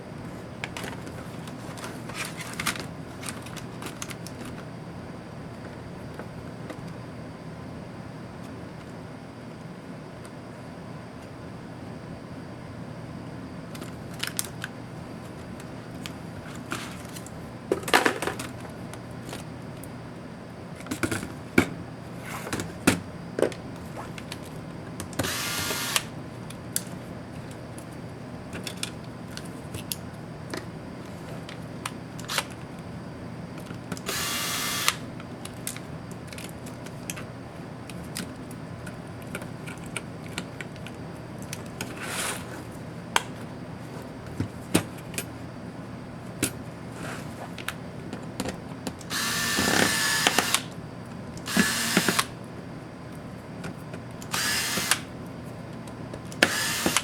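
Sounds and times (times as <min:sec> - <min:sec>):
electric screwdriver running: 0:25.2 - 0:26.1, 0:34.0 - 0:35.1, 0:49.1 - 0:50.7, 0:51.4 - 0:52.4, 0:54.3 - 0:55.1, 0:56.4 - 0:57.0
small parts and tools clicking: 0:51.4 - 0:52.3, 0:54.2 - 0:55.1.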